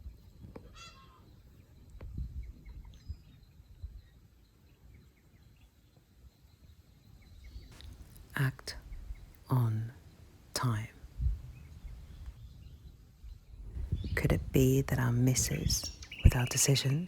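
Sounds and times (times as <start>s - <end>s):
faint bird chirps: 0.4s - 8.0s.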